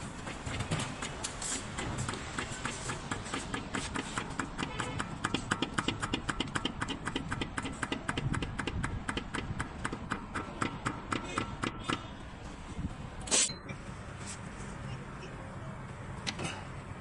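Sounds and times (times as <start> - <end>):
tie rod clunking with metallic ring: 3.4 - 12.1.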